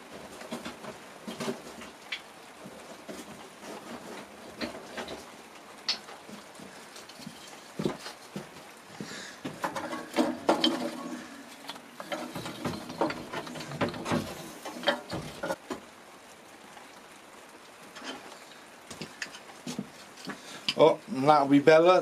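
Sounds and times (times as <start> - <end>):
kindling knocking in metal stove: 9.4 - 11.2, 12.0 - 15.6
metallic scraping: 9.6 - 15.6.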